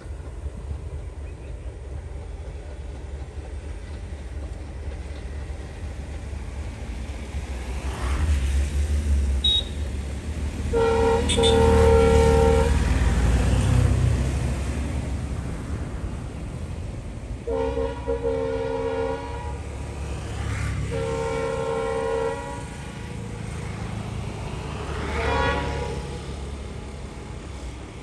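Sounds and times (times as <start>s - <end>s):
train rumbling: 0.0s - 28.0s
train horn chord: 10.7s - 12.9s, 17.4s - 19.6s, 20.9s - 22.9s, 25.1s - 26.1s.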